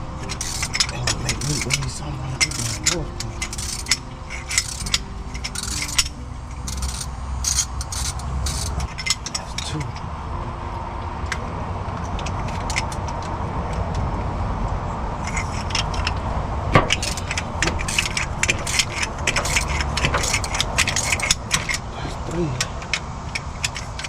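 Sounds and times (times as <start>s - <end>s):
hand ratchet clicking: 0.0s - 10.0s, 15.2s - 21.9s, 22.6s - 24.0s
metal tools clinking: 0.0s - 10.1s, 15.2s - 21.9s, 22.6s - 24.0s.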